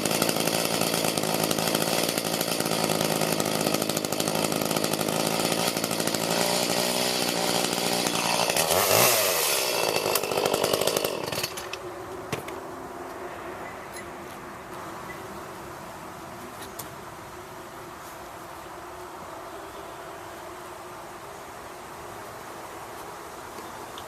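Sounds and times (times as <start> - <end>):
chainsaw engine running and revving: 0.0 - 11.8.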